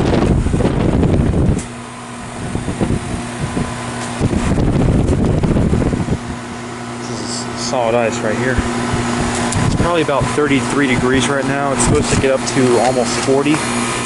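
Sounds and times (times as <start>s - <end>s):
wind rumbling on microphone: 0.0s - 6.8s, 8.4s - 12.4s
heat pump humming: 0.0s - 14.0s.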